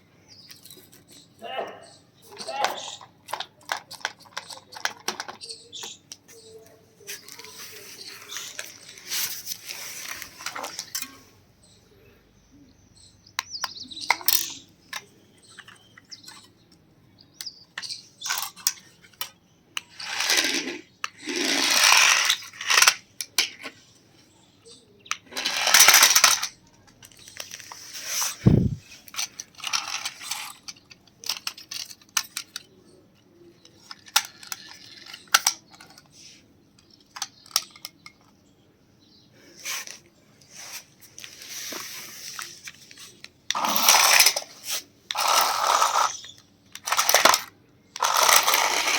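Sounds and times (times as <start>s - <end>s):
plastic toys clattering: 0.4s - 1.4s, 2.2s - 11.3s, 13.4s - 16.6s, 17.3s - 23.9s, 25.0s - 38.4s, 39.6s - 48.9s
plastic toys scraping: 2.4s - 11.3s, 17.4s - 23.9s, 25.0s - 32.7s, 33.6s - 38.3s, 39.5s - 48.9s.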